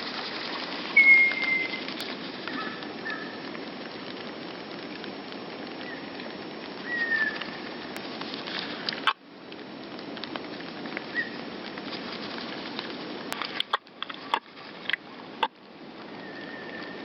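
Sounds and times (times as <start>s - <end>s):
background hiss: 0.0s - 17.0s
small songbirds: 1.0s - 1.9s.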